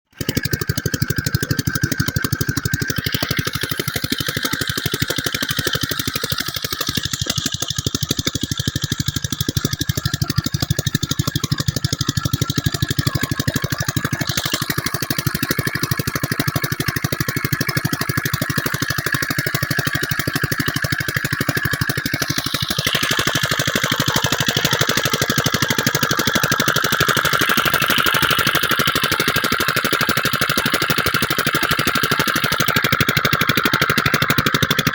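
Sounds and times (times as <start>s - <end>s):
diesel engine chugging: 0.1s - 34.9s.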